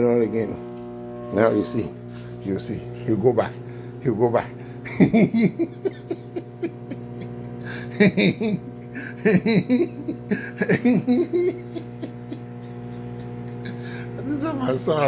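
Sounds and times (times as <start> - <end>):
microwave oven humming: 0.0 - 15.0
person laughing: 4.8 - 14.2.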